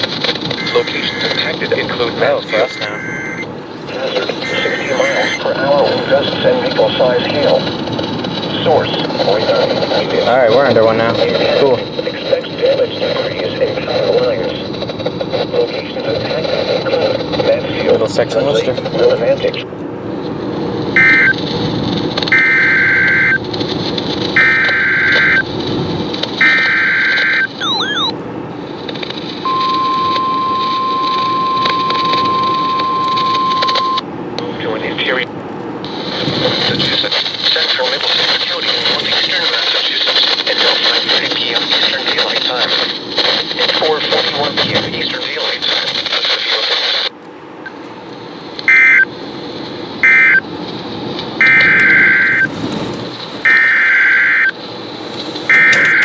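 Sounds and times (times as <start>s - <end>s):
steady background rumble: 0.0s - 56.0s
buzzing digital data bursts: 0.6s - 1.4s, 2.5s - 3.5s, 4.3s - 5.4s, 26.4s - 28.1s
warbling chirp: 0.6s - 1.4s, 2.5s - 5.4s, 27.6s - 28.2s
buzzy data burst screech: 0.6s - 1.5s, 2.5s - 5.4s, 51.4s - 56.0s
steady alarm tone: 0.6s - 1.5s, 2.4s - 5.5s, 22.3s - 23.4s, 24.4s - 25.5s, 26.4s - 28.2s, 29.5s - 34.0s, 50.0s - 50.4s, 51.4s - 54.6s, 55.2s - 56.0s.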